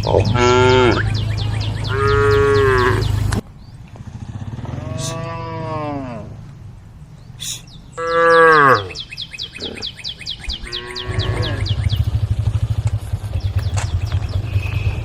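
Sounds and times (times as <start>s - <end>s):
cows mooing: 0.0s - 3.4s, 4.5s - 6.5s, 8.0s - 9.0s, 10.6s - 11.8s
low engine rumble: 0.0s - 6.8s, 11.0s - 15.0s.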